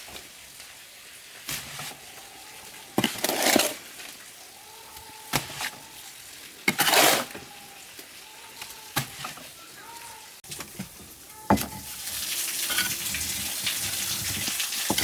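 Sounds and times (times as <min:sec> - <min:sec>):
hand tool striking and scraping: 0:06.7 - 0:07.4.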